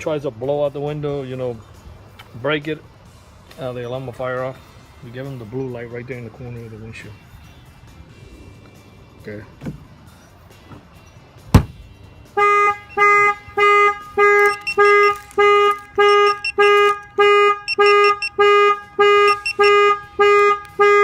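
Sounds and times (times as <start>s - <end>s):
car alarm honking tone: 12.4s - 21.0s.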